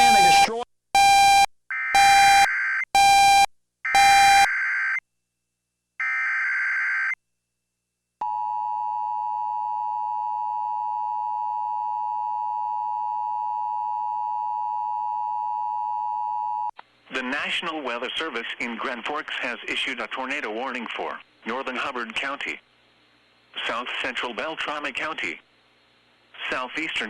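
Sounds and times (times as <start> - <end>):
loud beeps: 0.0 - 4.5
steady warning alarm tone: 0.0 - 4.5.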